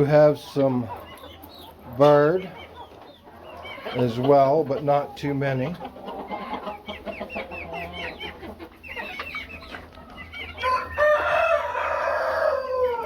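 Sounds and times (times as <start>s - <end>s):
chickens clucking: 0.0s - 13.0s
rooster crowing: 10.5s - 13.0s.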